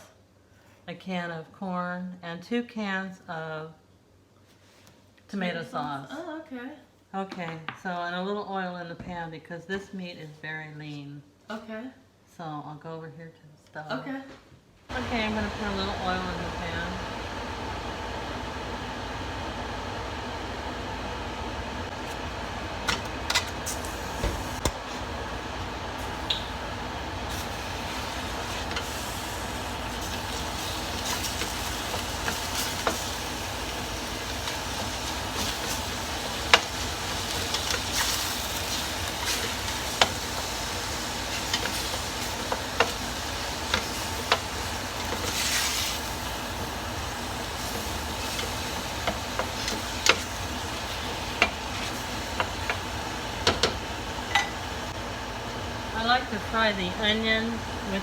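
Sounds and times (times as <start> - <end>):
meat sizzling in a pan: 23.3 - 54.9.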